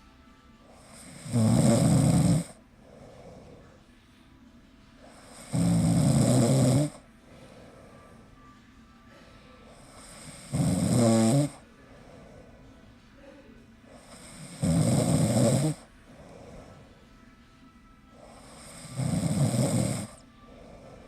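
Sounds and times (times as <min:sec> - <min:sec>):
quiet breathing: 0:00.0 - 0:21.0
loud rattling snores: 0:00.8 - 0:02.6, 0:05.1 - 0:07.0, 0:09.8 - 0:11.6, 0:13.9 - 0:16.6, 0:18.2 - 0:21.0.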